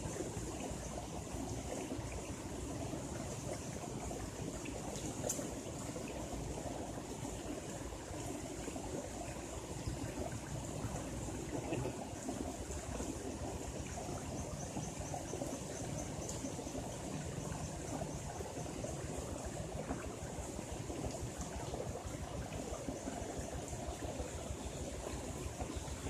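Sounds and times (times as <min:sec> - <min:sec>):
water rushing: 0:00.0 - 0:26.0.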